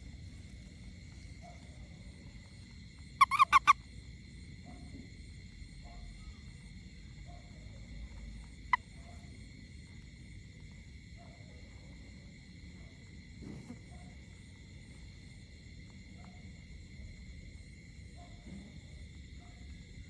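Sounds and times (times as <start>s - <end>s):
frog honking calls: 3.2s - 3.8s.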